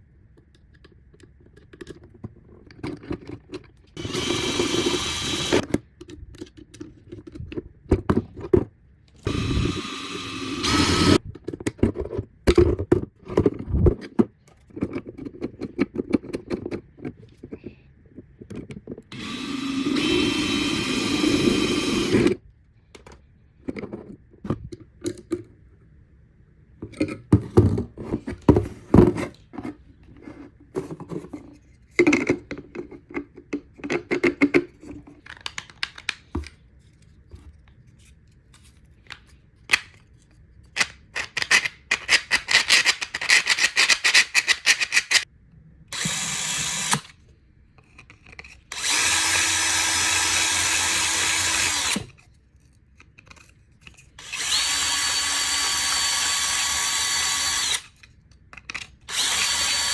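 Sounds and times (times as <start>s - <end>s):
power drill spinning: 4.0s - 5.8s, 9.2s - 11.2s, 19.1s - 22.4s, 46.0s - 47.1s, 48.7s - 52.1s, 54.2s - 58.0s, 59.1s - 59.9s.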